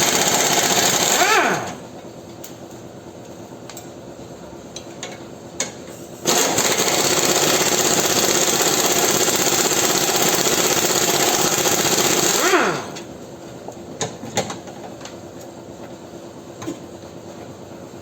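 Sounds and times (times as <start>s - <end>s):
power tool running: 0.0s - 1.9s, 6.3s - 13.1s.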